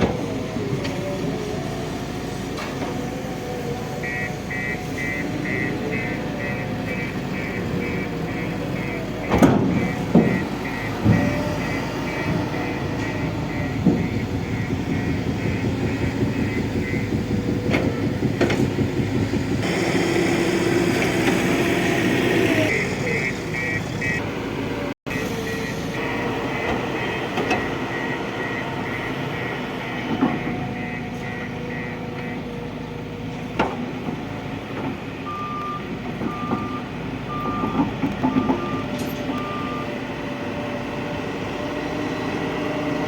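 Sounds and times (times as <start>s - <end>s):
heavy machinery engines running: 0.0s - 43.0s
reversing alarm beeping: 3.4s - 18.8s, 19.6s - 24.2s, 25.1s - 32.6s, 35.2s - 43.0s
loud knocks: 9.3s - 11.6s, 12.2s - 19.7s.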